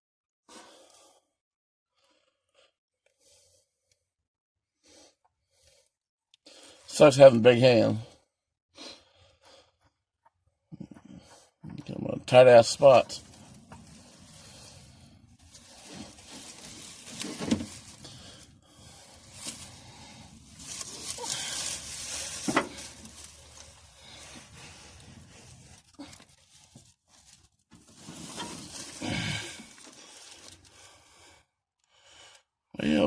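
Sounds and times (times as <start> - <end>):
heavy strained breathing: 10.7 - 11.8, 12.5 - 26.8, 28.0 - 32.5.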